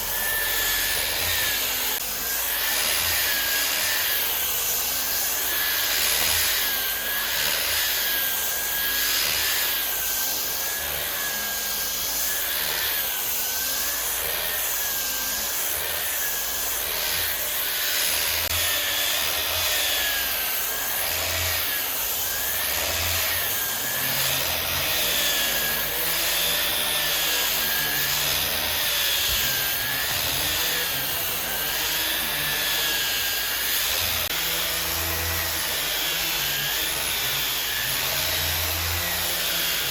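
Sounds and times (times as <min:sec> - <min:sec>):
power tool whining into wood: 0:00.0 - 0:39.9.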